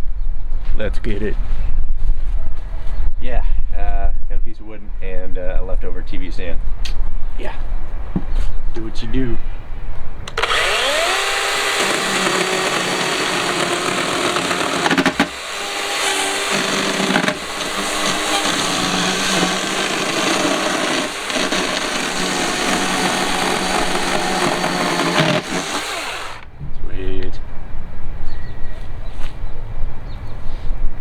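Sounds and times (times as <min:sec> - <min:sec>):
electric chainsaw cutting wood: 0:10.3 - 0:26.5.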